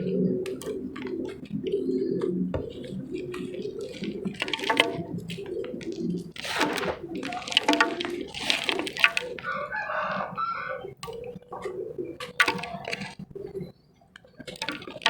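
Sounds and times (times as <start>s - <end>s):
hard shapes crunching: 2.6s - 9.8s.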